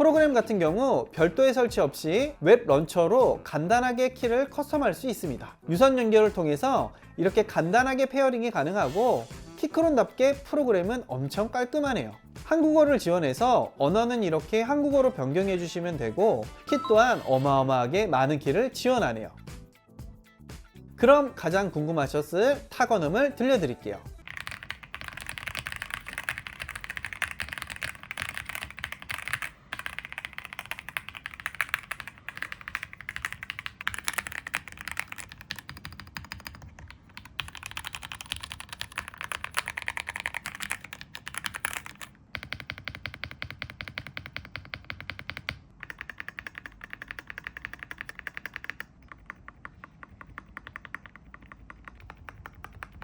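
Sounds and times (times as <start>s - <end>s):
mechanical keyboard typing: 24.2s - 53.0s.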